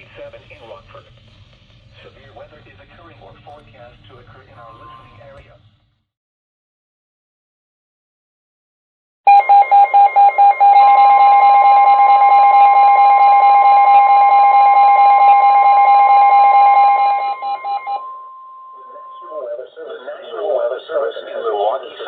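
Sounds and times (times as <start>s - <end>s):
high steady warning tone: 4.2s - 5.4s, 9.3s - 21.4s
loud buzzer tone: 9.3s - 19.4s.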